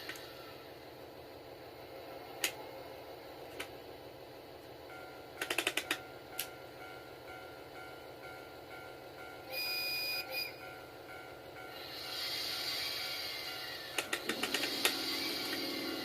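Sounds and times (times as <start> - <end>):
model train running on track: 0.0 - 16.0
sharp clicks: 13.9 - 15.7.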